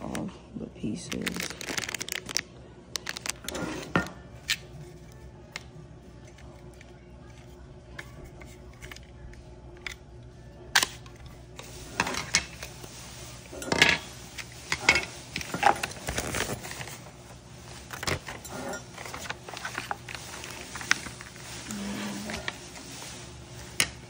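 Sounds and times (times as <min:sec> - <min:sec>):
plastic pieces clicking and tapping: 0:03.0 - 0:03.5.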